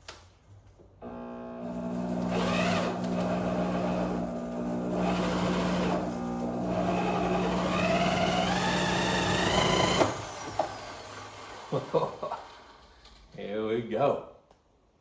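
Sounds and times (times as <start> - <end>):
motor humming: 1.0 - 10.3.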